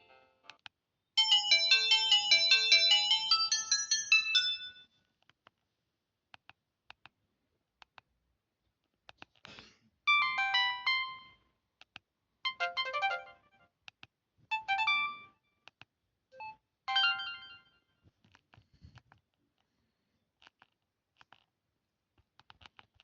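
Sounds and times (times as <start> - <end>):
mobile phone ringtone melody: 1.2 - 4.9, 10.1 - 11.4, 12.5 - 13.6, 14.5 - 15.4, 16.4 - 17.8.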